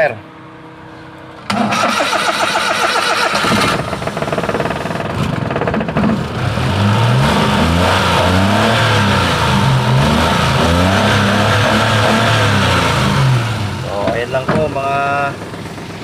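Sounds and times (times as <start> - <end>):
engine cranking on starter: 1.4 - 6.3
engine running and revving: 3.3 - 13.8.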